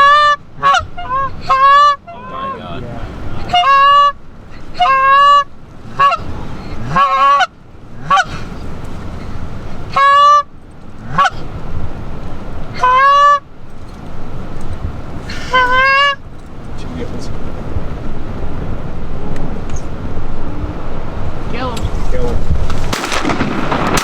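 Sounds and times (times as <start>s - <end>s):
goose honking: 0.0s - 11.6s, 12.7s - 13.5s, 15.3s - 16.2s
wind rushing: 17.2s - 24.0s.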